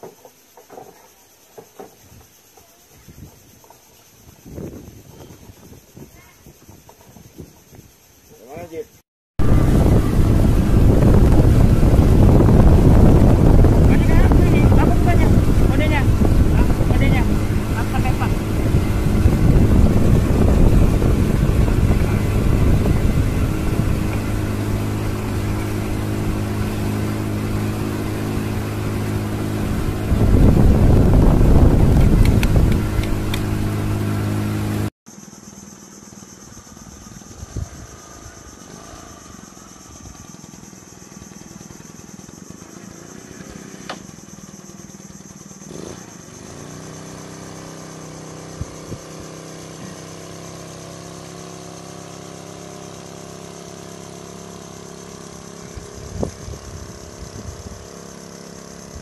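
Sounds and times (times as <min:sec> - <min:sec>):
outboard motor running: 0:09.4 - 0:59.0.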